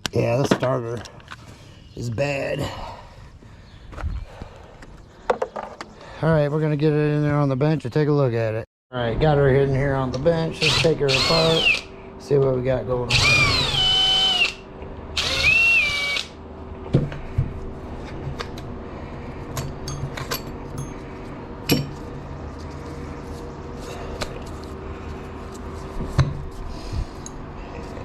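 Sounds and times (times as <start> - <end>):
steady low hum: 0.0 - 28.0
power drill whine: 10.6 - 11.9, 13.1 - 14.6, 15.2 - 16.4.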